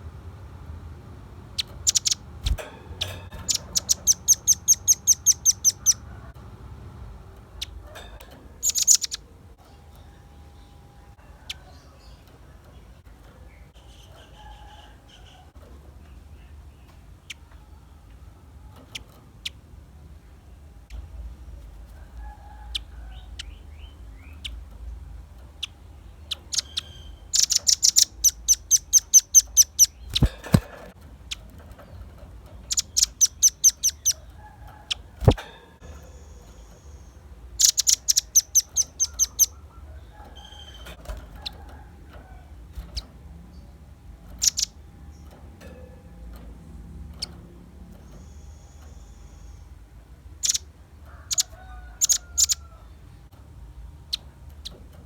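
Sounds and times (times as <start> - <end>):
bird singing sharp chip notes: 1.6 - 6.1, 26.2 - 30.9, 32.7 - 34.2, 35.2 - 39.6.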